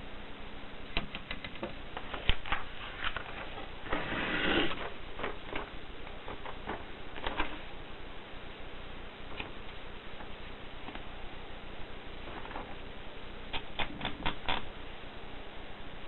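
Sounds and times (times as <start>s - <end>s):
rasping typewriter mechanism: 13.5s - 14.7s.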